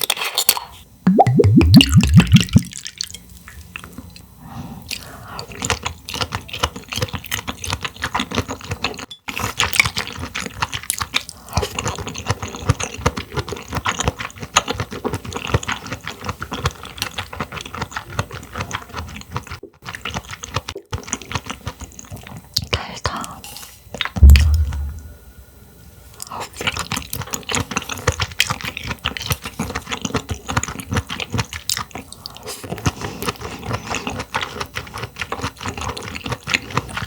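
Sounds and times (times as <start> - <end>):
wet chewing clicks and smacks: 27.3 - 37.0.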